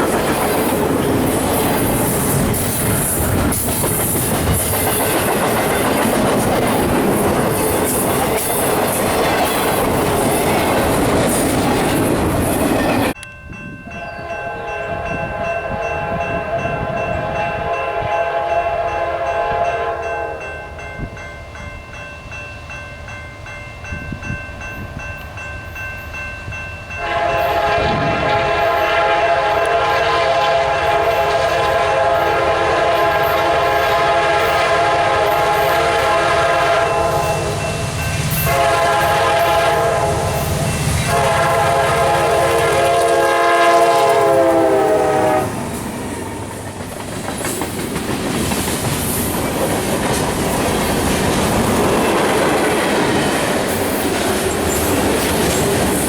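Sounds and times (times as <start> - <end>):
train cars rolling past: 0.0 - 17.8, 23.4 - 56.0
locomotive air horn: 14.2 - 20.5, 27.0 - 37.8, 38.4 - 45.7.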